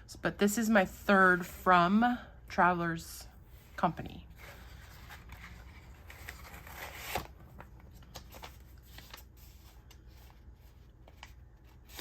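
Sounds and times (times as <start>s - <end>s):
paper packaging rustling: 4.3s - 12.0s.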